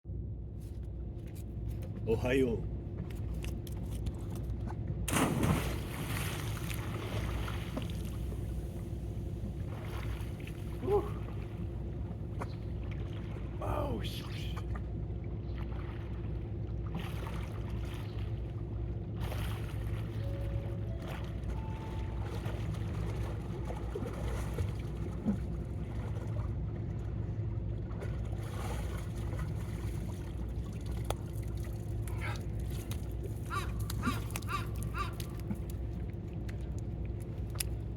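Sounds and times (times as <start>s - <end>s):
low engine rumble: 0.1s - 37.9s.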